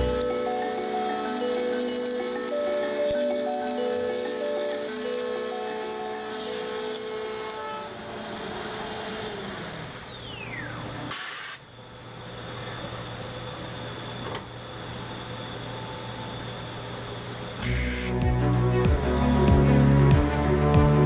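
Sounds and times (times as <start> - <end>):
machine humming: 0.0 - 11.1
router spindle whine: 0.0 - 11.1
air hiss: 11.1 - 11.7, 17.6 - 18.2.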